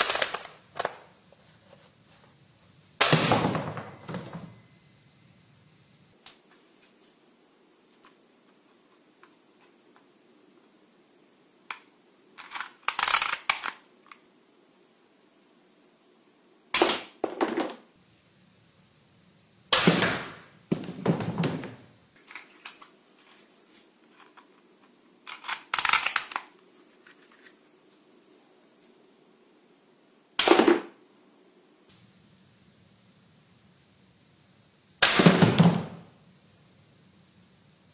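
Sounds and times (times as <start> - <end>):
toy guns firing rattling bursts: 12.4 - 13.8, 25.3 - 26.5.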